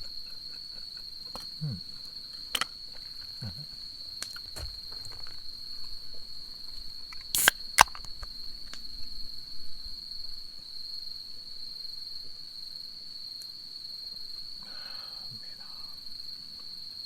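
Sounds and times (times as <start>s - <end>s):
night insects trilling: 0.0s - 17.0s
sharp click: 7.2s - 8.3s.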